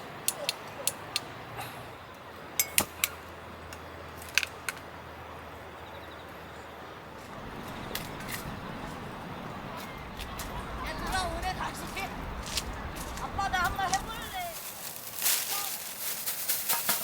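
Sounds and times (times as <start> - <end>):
small hard objects clinking: 13.0 - 17.0.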